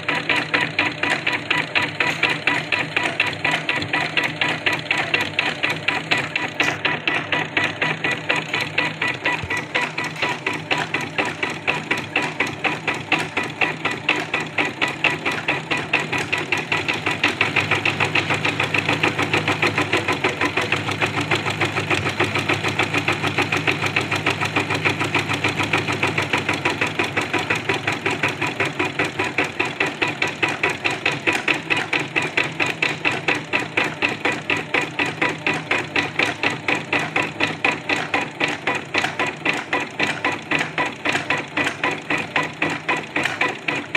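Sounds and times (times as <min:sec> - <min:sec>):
embroidery machine stitching: 0:00.0 - 0:43.9.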